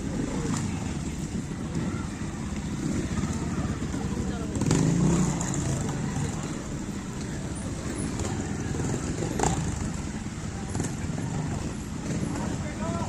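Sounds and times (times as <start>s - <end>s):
motorcycle engine at low revs: 0.0s - 12.8s.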